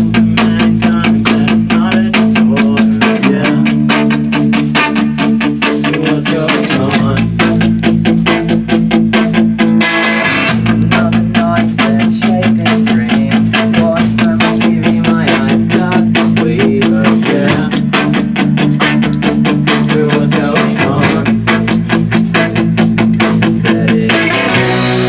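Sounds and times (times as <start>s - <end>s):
electric guitar chords: 0.0s - 25.0s
fast drum kit beat: 0.0s - 25.0s.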